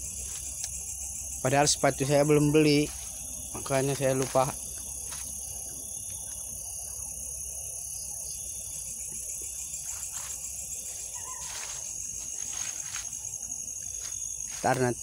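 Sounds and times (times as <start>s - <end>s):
crickets chirring: 0.0s - 15.0s.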